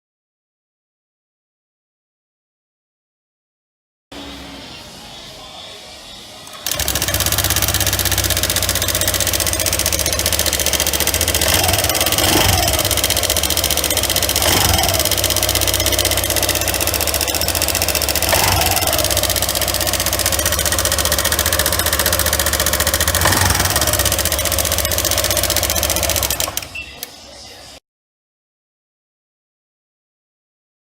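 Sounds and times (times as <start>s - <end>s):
abnormal engine mechanical noise: 4.1s - 27.8s
scooter engine idling: 6.5s - 26.7s
throttle blips: 6.7s - 27.1s.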